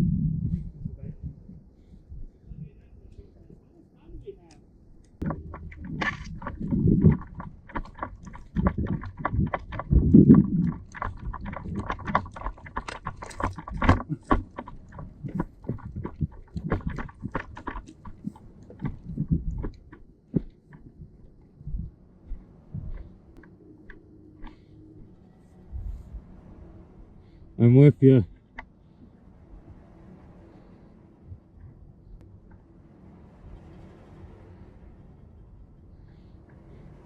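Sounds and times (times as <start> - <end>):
low thuds: 5.2 - 23.5.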